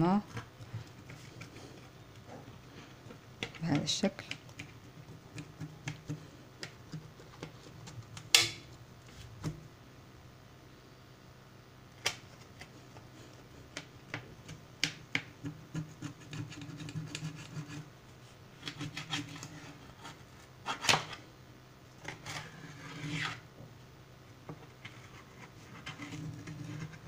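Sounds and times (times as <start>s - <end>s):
bread crust crackling and scraping: 0.1s - 8.4s, 22.0s - 23.4s, 24.7s - 27.0s.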